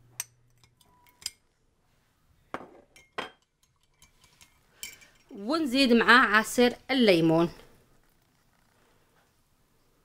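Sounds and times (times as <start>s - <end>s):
spoon clinking against cup: 3.0s - 5.3s.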